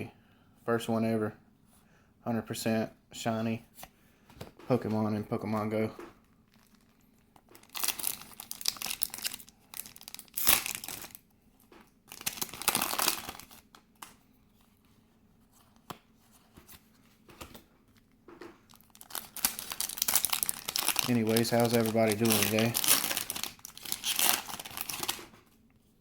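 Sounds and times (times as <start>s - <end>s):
foil wrapper crinkling and tearing: 7.5s - 11.2s, 12.1s - 13.9s, 18.7s - 25.3s.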